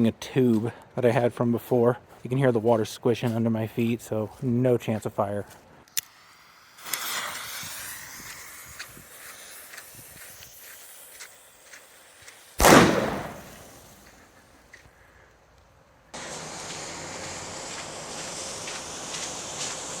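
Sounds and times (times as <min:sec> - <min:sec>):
fuse hissing and sputtering: 0:06.0 - 0:14.3, 0:16.2 - 0:20.0
cannon boom: 0:12.6 - 0:14.0.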